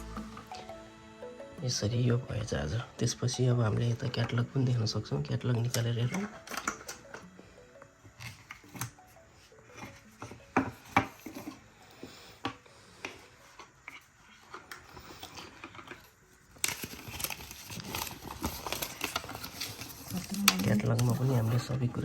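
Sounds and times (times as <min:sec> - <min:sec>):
paper manual crackling: 0:02.7 - 0:07.3, 0:13.4 - 0:22.0.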